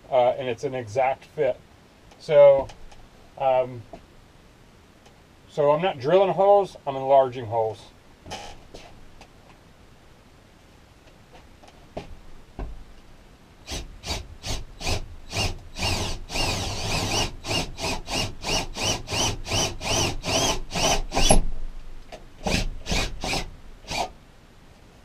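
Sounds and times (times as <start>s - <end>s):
power drill grinding metal: 13.7s - 21.4s, 22.4s - 24.1s.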